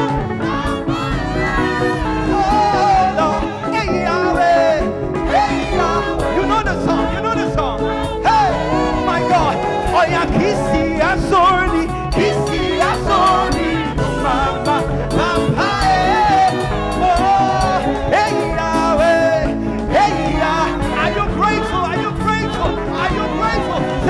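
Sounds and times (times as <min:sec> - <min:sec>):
band playing upbeat rhythm: 0:00.0 - 0:24.0
person singing long notes: 0:08.1 - 0:22.1.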